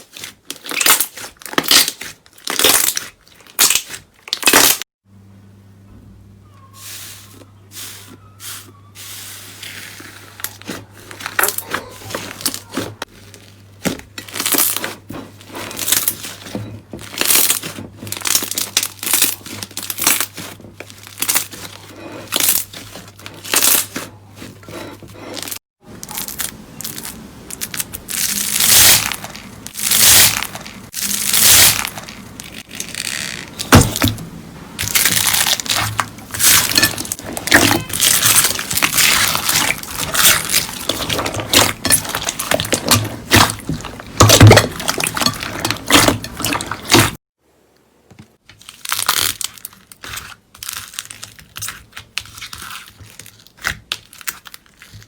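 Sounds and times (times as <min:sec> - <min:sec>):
slime crackling and popping: 0:00.0 - 0:04.8, 0:17.0 - 0:24.0, 0:26.0 - 0:34.2, 0:34.8 - 0:47.2, 0:48.4 - 0:55.0.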